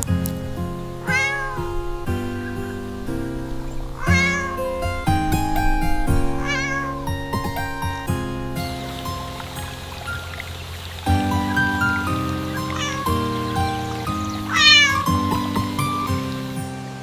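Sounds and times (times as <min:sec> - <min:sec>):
background music sustained notes: 0:00.0 - 0:17.0
cat meowing: 0:01.0 - 0:01.6, 0:04.0 - 0:04.6, 0:06.4 - 0:07.0.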